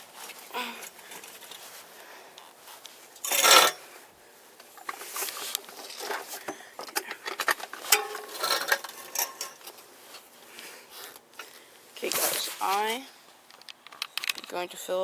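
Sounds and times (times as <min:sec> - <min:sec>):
small clicks and taps on bicycle parts: 0:13.5 - 0:14.6.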